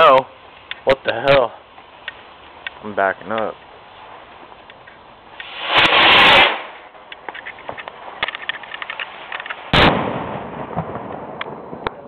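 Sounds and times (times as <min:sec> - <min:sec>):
faint crackles: 0:00.0 - 0:09.8
firework rocket launch hiss: 0:05.3 - 0:07.0
firework bang with echo: 0:05.5 - 0:06.8, 0:09.7 - 0:12.0.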